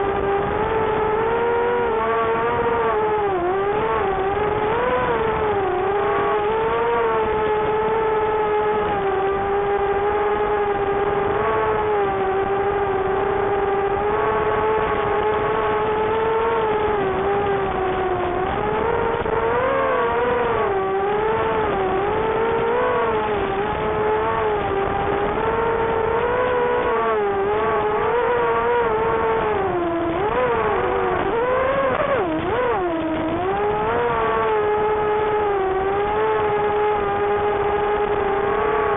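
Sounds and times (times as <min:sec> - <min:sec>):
quadcopter motors whining: 0:00.0 - 0:38.9.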